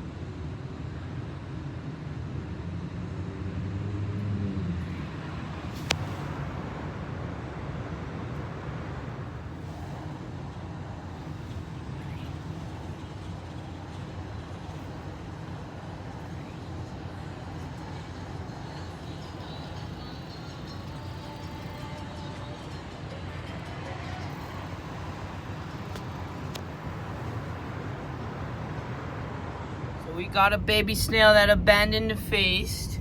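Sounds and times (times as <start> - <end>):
road traffic noise: 0.0 - 33.0
vehicle engine hum: 0.0 - 33.0.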